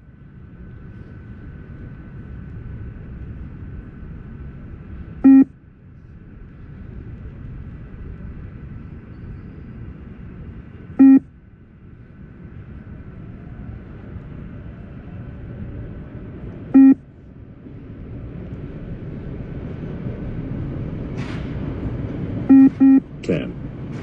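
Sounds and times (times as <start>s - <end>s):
steady low background noise: 0.0s - 24.0s
short electronic beeps: 5.2s - 5.5s, 11.0s - 11.2s, 16.8s - 17.0s, 22.5s - 23.1s.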